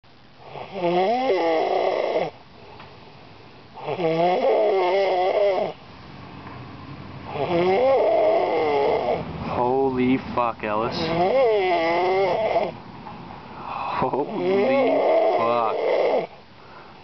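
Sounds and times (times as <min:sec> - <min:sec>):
man snoring loudly: 0:00.4 - 0:02.4, 0:03.8 - 0:05.8, 0:07.3 - 0:09.7, 0:10.9 - 0:12.8, 0:13.7 - 0:16.4.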